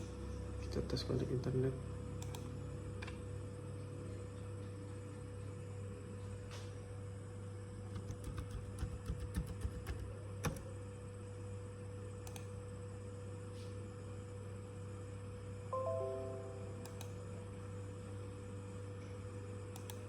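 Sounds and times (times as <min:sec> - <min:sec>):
electrical hum: 0:00.0 - 0:20.0
laptop keys clicking: 0:07.9 - 0:10.7
short pitched tone: 0:15.8 - 0:17.0.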